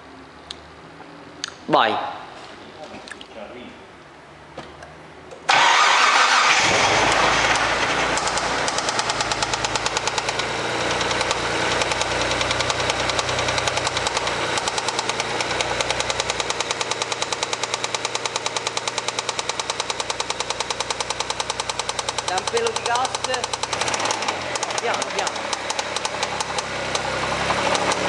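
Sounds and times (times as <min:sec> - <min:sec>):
car engine starting and idling: 0:05.4 - 0:28.0
regular engine knock: 0:08.2 - 0:28.0.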